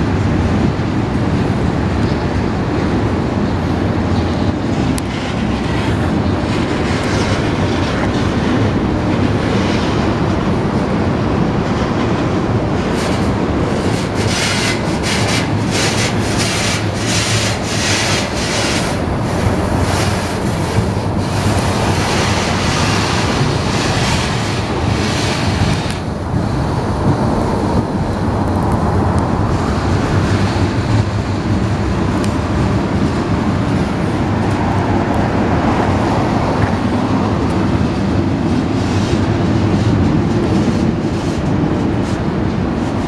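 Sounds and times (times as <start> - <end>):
train cars rumbling past: 0.0 - 43.0
wheels clattering over rail joints: 4.0 - 28.0.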